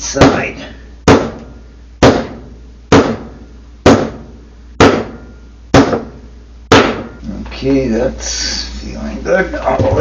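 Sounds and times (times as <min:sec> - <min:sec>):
hammer blows ringing on metal: 0:02.0 - 0:04.2, 0:04.8 - 0:06.1, 0:06.7 - 0:07.2.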